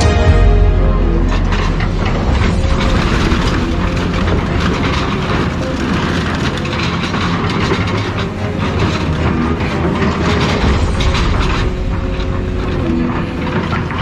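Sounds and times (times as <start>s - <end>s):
low engine rumble: 0.0s - 14.0s
metal clanking and crunching: 0.0s - 14.0s.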